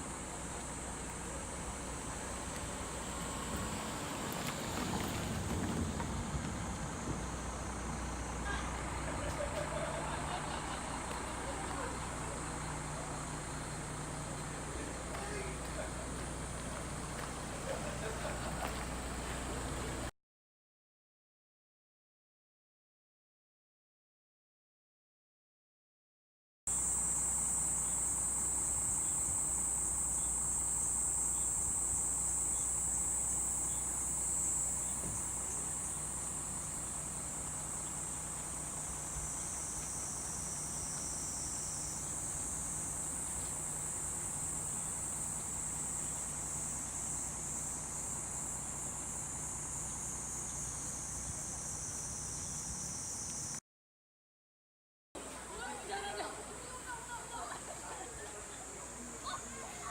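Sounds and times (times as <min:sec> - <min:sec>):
insects buzzing: 0:00.0 - 0:20.1, 0:26.7 - 0:53.6, 0:55.2 - 0:59.9.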